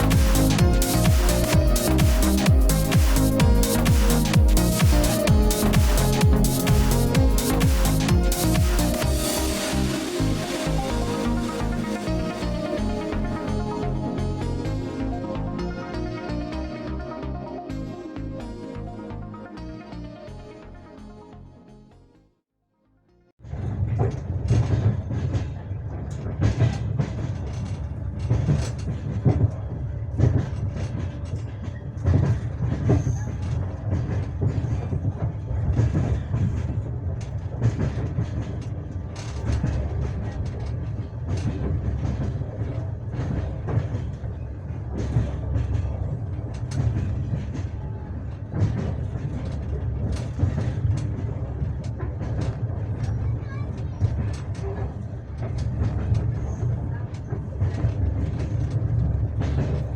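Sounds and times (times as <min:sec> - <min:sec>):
low rumble of running train: 0:00.0 - 0:20.9, 0:23.4 - 0:59.9
train wheels clattering over rail joints: 0:23.4 - 0:59.9.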